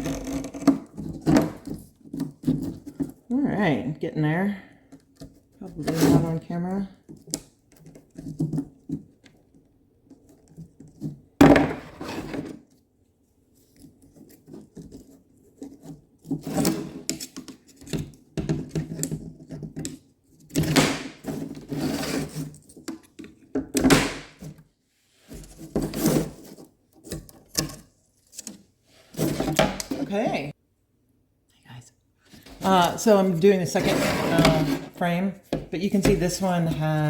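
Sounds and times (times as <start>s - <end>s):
rubbing and scraping on window screen: 5.2s - 11.2s, 11.9s - 12.8s, 13.5s - 18.2s, 21.2s - 23.2s, 24.4s - 30.5s, 32.3s - 37.0s.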